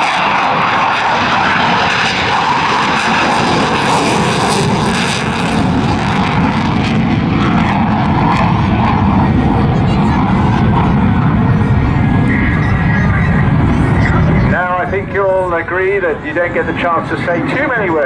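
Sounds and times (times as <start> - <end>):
jet engine roar: 0.0 - 18.0.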